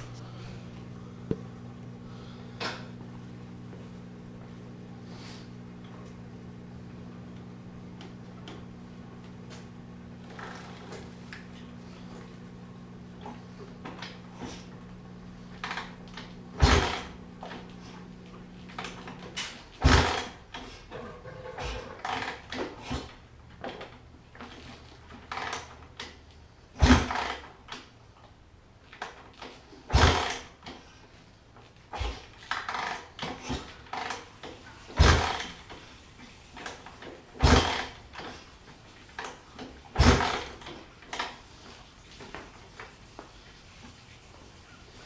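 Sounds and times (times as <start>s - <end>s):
kick-starter clunks: 15.6s - 17.6s, 18.7s - 26.2s, 26.8s - 27.9s, 29.0s - 30.8s, 31.9s - 35.9s, 36.6s - 38.4s, 39.2s - 41.4s
motorcycle engine being kicked over: 15.6s - 17.6s, 18.7s - 26.2s, 26.8s - 27.9s, 28.9s - 30.8s, 31.9s - 35.9s, 36.5s - 38.4s, 39.1s - 41.4s.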